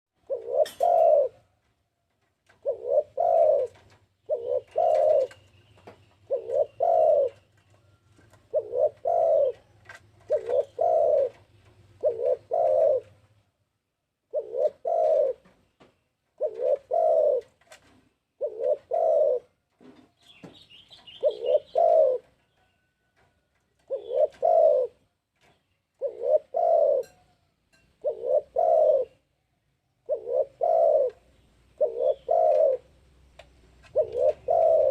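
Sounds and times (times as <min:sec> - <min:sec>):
dove cooing: 0:00.2 - 0:01.5, 0:02.5 - 0:13.3, 0:14.3 - 0:15.6, 0:16.4 - 0:17.8, 0:18.4 - 0:22.7, 0:23.8 - 0:25.1, 0:25.9 - 0:29.4, 0:30.0 - 0:33.0, 0:33.8 - 0:34.9.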